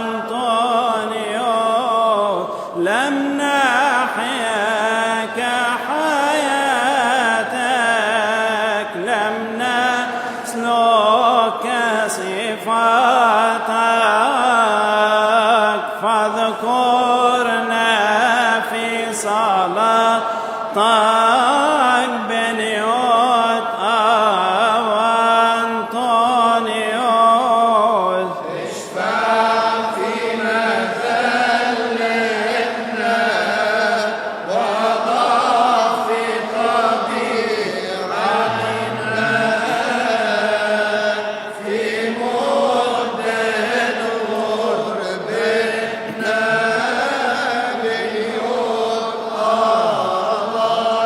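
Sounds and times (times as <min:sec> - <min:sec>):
man chanting a hymn: 0:00.0 - 0:51.0
sustained drone: 0:38.4 - 0:40.2.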